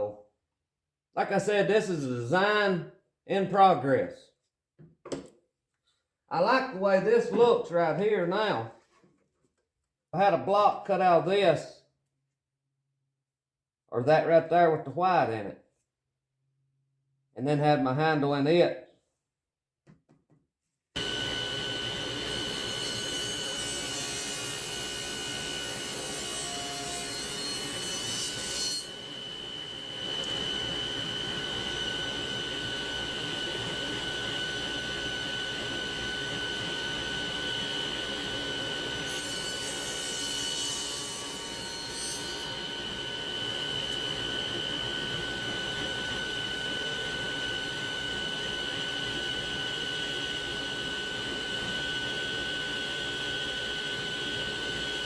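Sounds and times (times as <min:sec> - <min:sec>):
power saw motor whine: 0:21.0 - 0:40.2, 0:41.2 - 0:55.0
saw cutting through wood: 0:21.0 - 0:55.0.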